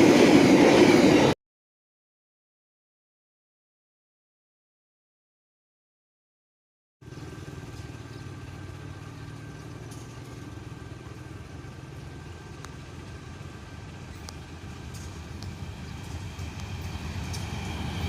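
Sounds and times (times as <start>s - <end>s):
diesel locomotive rumble: 7.0s - 18.0s.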